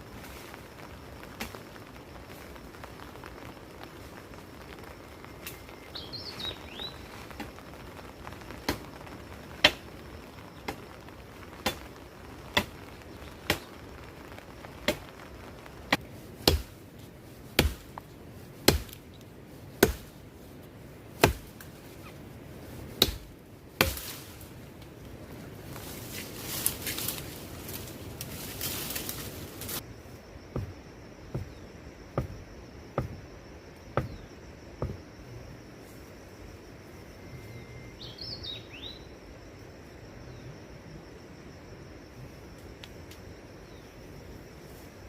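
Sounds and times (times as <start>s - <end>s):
chopping strikes on wood: 15.9s - 16.8s, 17.6s - 17.9s, 18.7s - 19.0s, 19.8s - 20.1s, 21.2s - 21.5s, 23.0s - 24.1s, 32.2s - 32.4s, 33.0s - 33.2s, 34.0s - 34.2s, 34.8s - 35.0s.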